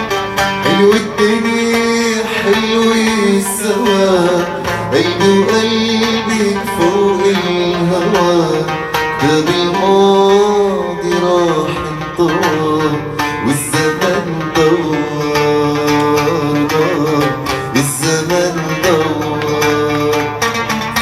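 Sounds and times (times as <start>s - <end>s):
plucked strings: 0.0s - 21.0s.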